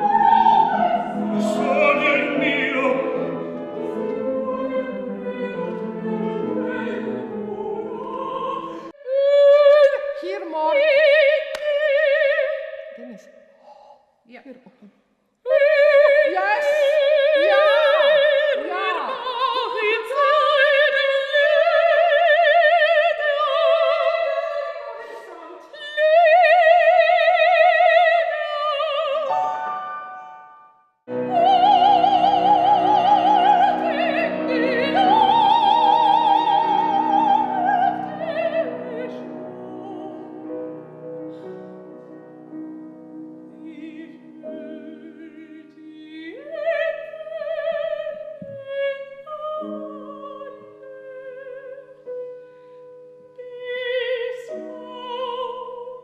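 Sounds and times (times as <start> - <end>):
woman singing operatically: 0.0 - 3.2, 4.1 - 12.8, 15.5 - 29.6, 31.2 - 40.4, 43.5 - 52.0, 53.4 - 56.0.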